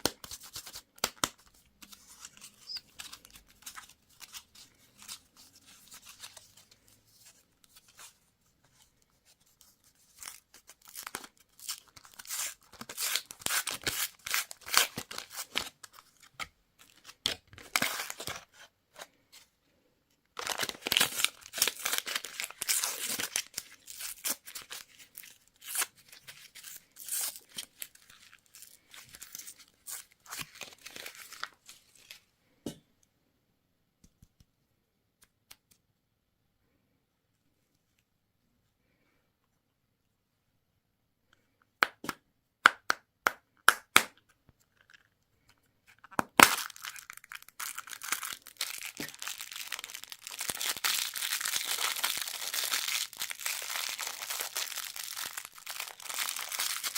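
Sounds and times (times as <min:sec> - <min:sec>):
candy wrappers crinkling: 0:10.1 - 0:18.5, 0:20.4 - 0:32.2, 0:44.6 - 0:56.9.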